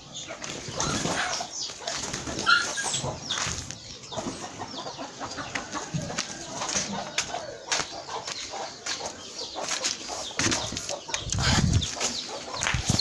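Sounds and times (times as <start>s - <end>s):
chicks cheeping: 0.0s - 13.0s
hens clucking: 0.0s - 13.0s
wing flapping: 10.6s - 13.0s.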